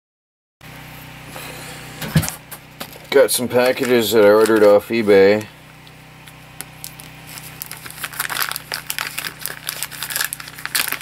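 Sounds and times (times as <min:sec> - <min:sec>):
steady low hum: 0:00.6 - 0:11.0
package wrapping crinkling and tearing: 0:02.9 - 0:11.0.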